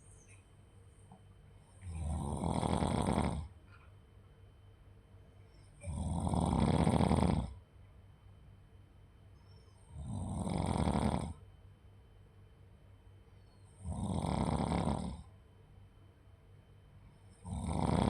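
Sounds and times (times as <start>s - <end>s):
person snoring: 1.8s - 3.5s, 5.8s - 7.6s, 10.0s - 11.4s, 13.8s - 15.3s, 17.4s - 18.0s.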